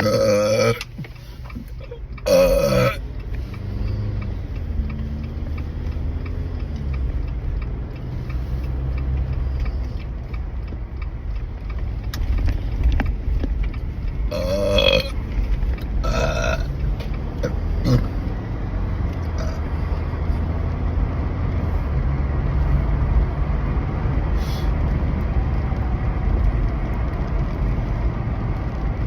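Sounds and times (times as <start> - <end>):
person burping loudly: 0.0 - 0.9, 2.2 - 3.0, 14.3 - 15.2, 16.0 - 16.8, 17.4 - 18.2, 19.4 - 19.8.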